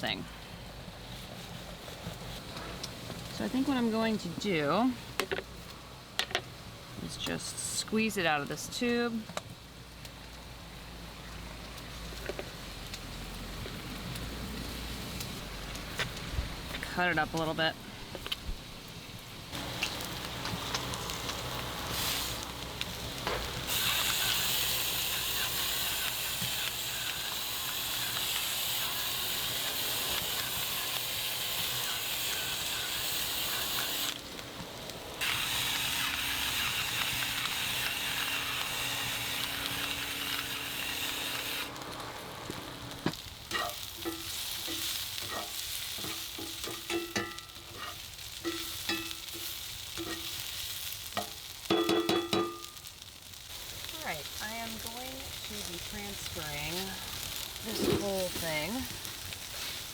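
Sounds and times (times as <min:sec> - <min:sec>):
vegetables sizzling in oil: 0:00.9 - 0:59.9
utensil stirring a pan: 0:19.6 - 0:34.2, 0:43.2 - 0:52.6.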